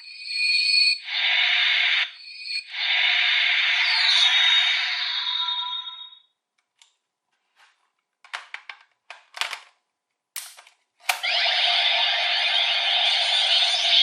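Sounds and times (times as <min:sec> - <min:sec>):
toy belt electronic sound effect: 0:01.0 - 0:06.2, 0:11.2 - 0:14.0.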